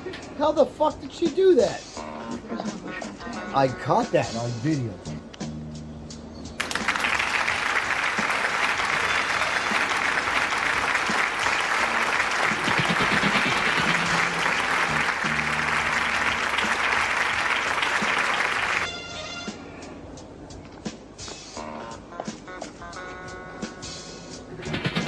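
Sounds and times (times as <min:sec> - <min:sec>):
faint music: 0:00.0 - 0:25.0
crowd applause: 0:06.6 - 0:18.9.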